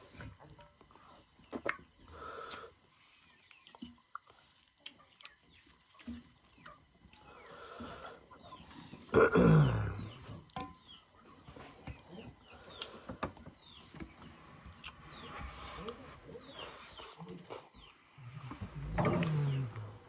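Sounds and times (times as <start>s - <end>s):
chewing and eating clicks: 3.4s - 7.3s, 18.5s - 20.0s.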